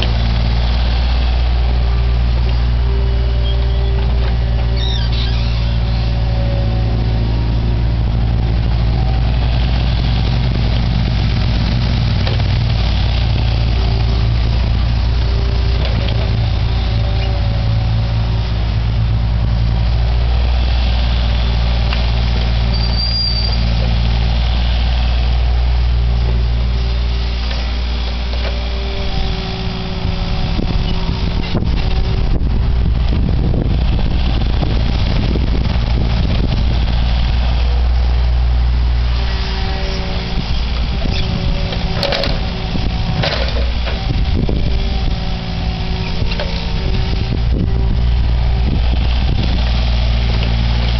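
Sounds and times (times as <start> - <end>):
excavator engine running: 0.0 - 50.9
high squeal: 0.3 - 7.9, 22.6 - 23.8, 39.1 - 48.3.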